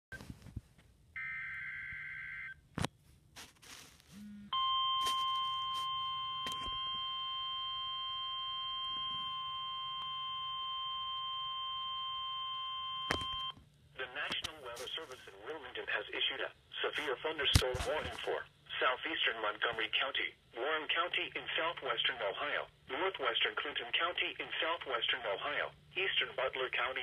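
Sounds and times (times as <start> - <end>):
steady piercing alarm tone: 4.2 - 13.4.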